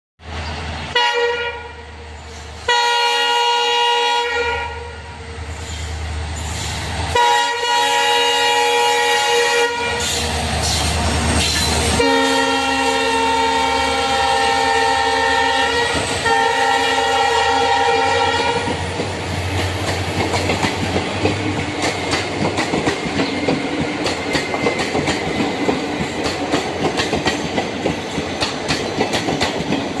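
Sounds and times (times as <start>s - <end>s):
locomotive horn blasts: 0.9s - 1.8s, 2.7s - 5.3s, 7.1s - 10.2s, 11.9s - 18.8s
train wheels clattering over rail joints: 18.7s - 30.0s.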